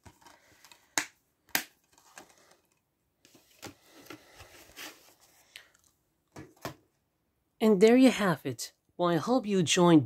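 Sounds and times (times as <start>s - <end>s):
plastic disc cases clicking: 0.0s - 2.8s.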